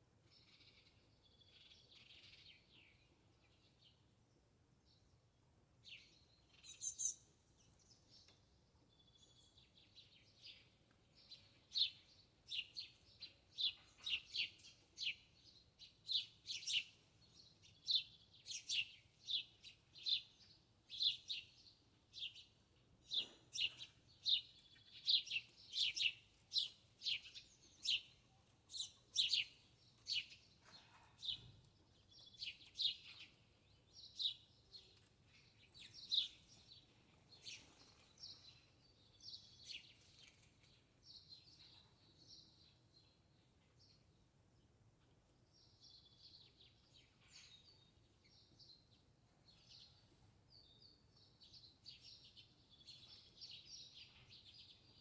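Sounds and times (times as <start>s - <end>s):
small bird chirping: 5.9s - 8.4s, 22.1s - 42.8s.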